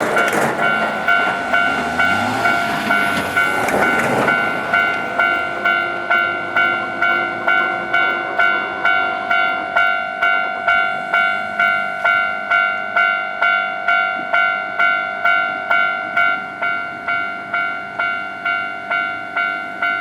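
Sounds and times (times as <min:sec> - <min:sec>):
rail clicks: 0:00.0 - 0:14.6
level crossing warning bell ringing: 0:00.0 - 0:20.0
train passing over rails: 0:00.0 - 0:20.0.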